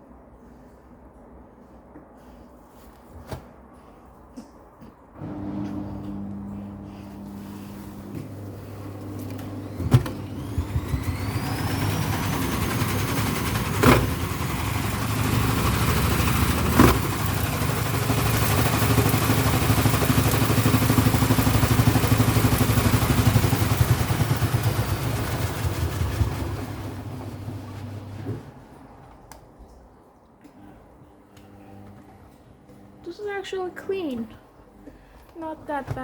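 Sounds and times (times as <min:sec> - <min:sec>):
washing machine motor whine: 0:05.2 - 0:28.9.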